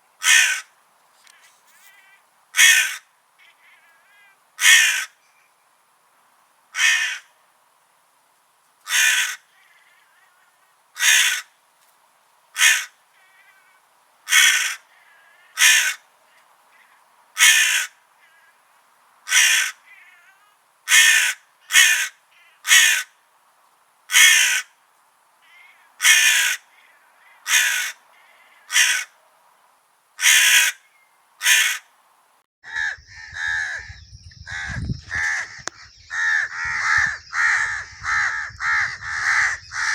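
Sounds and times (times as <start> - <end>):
crows cawing: 0.2 - 0.8, 2.1 - 5.2, 6.8 - 7.3, 8.8 - 10.3, 11.0 - 11.6, 12.6 - 16.1, 16.7 - 18.6, 19.3 - 23.2, 24.1 - 24.8, 25.4 - 29.2, 30.2 - 31.9, 32.6 - 39.9.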